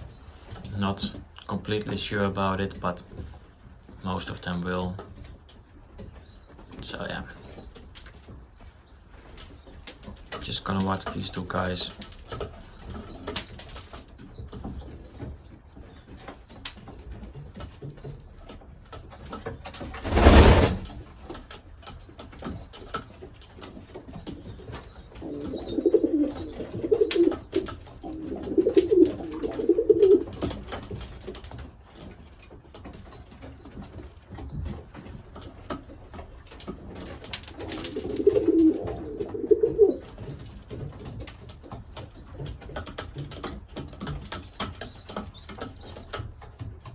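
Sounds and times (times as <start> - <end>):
loud rustle: 19.8 - 21.0
pigeons cooing: 24.1 - 31.1, 36.5 - 46.2.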